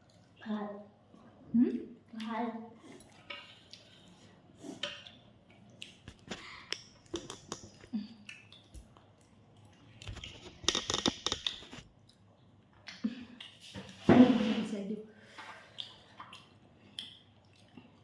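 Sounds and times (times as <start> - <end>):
chewing and tearing food: 2.9 - 13.7, 15.6 - 18.0
small clicks and clatters: 6.0 - 7.9, 10.0 - 11.9.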